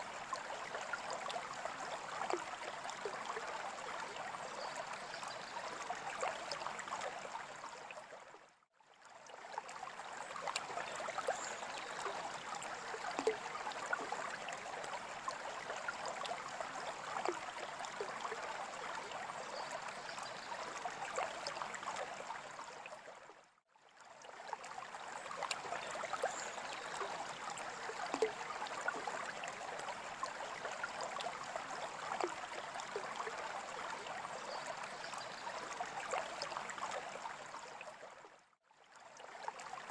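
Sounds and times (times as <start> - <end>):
water trickling and splashing: 0.0 - 39.9
water bubbling crackles: 9.7 - 22.6, 24.4 - 37.6.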